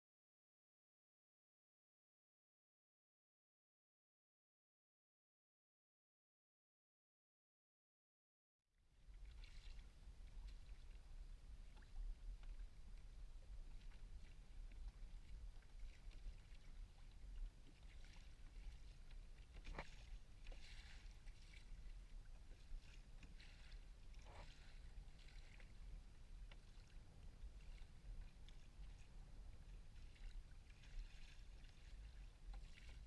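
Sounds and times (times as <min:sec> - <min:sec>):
low steady rumble: 0:08.8 - 0:33.0
kayak paddle splashing: 0:09.0 - 0:33.0.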